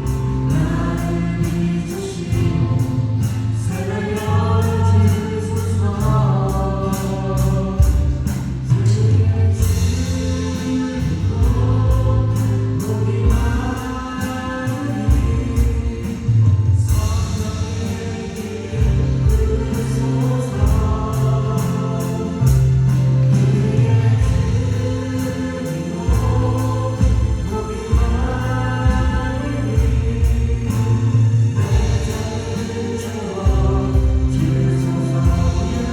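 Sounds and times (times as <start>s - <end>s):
acoustic guitar: 0.0s - 35.9s
drums with steady beat: 0.0s - 35.9s
keyboards: 0.0s - 35.9s
vocalists singing together: 0.0s - 35.9s.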